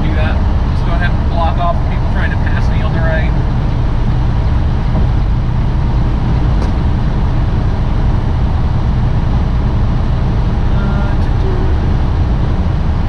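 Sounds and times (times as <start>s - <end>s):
truck engine and road rumble: 0.0s - 13.0s.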